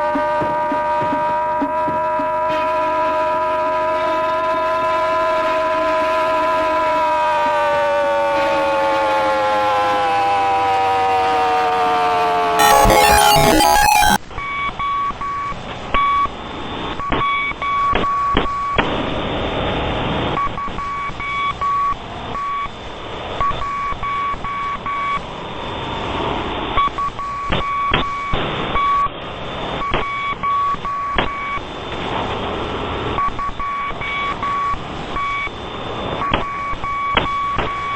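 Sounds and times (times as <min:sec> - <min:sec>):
high electronic beep tone: 0:12.6 - 0:14.2.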